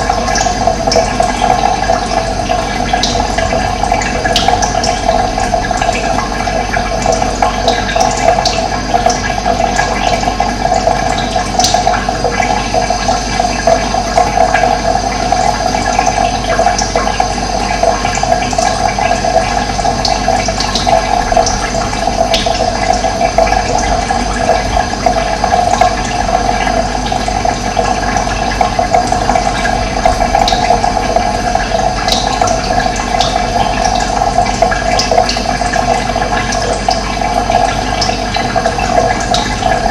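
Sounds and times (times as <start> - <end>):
running water rushing: 15.1 - 39.9.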